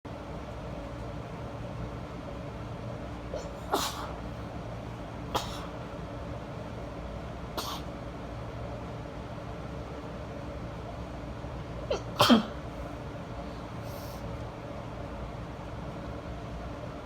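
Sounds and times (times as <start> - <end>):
woman sneezing: 3.4 - 4.2, 11.9 - 12.6.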